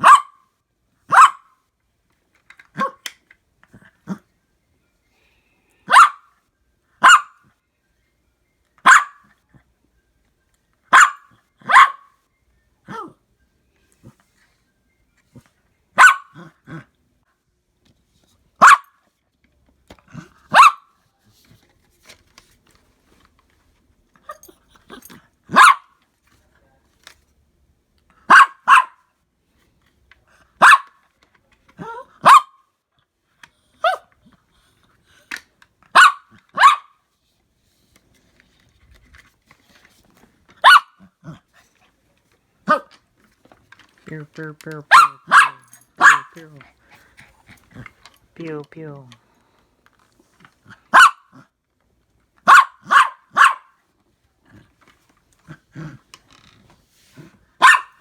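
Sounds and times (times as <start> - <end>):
dog barking: 0.0 - 0.4, 1.1 - 1.6, 2.8 - 3.0, 5.9 - 6.3, 7.0 - 7.4, 8.8 - 9.3, 10.9 - 12.2, 12.9 - 13.2, 16.0 - 16.8, 18.6 - 19.0, 20.5 - 20.9, 24.9 - 26.0, 28.3 - 29.0, 30.6 - 31.0, 31.8 - 32.6, 33.8 - 34.1, 35.9 - 37.0, 40.6 - 41.4, 42.7 - 42.9, 44.8 - 46.4, 50.9 - 51.5, 52.4 - 53.8, 57.6 - 58.0.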